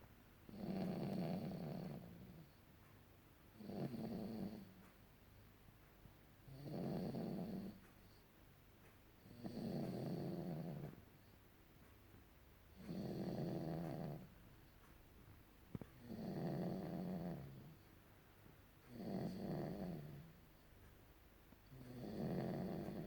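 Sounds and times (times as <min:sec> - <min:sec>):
baby snoring softly: 0:00.5 - 0:02.6, 0:03.6 - 0:04.9, 0:06.5 - 0:08.2, 0:09.2 - 0:11.1, 0:12.7 - 0:14.3, 0:16.0 - 0:17.9, 0:18.9 - 0:20.4, 0:21.7 - 0:23.0.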